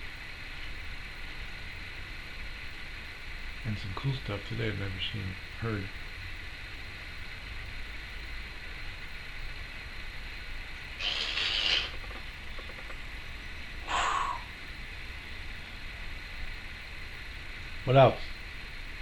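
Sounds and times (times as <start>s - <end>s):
low background hum: 0.0s - 19.0s
parrot hissing: 11.0s - 12.0s, 13.8s - 14.6s.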